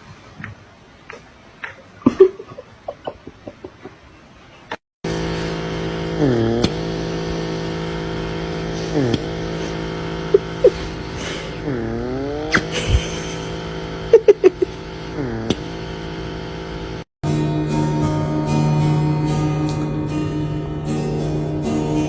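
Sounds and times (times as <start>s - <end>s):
motor droning: 5.0s - 22.0s.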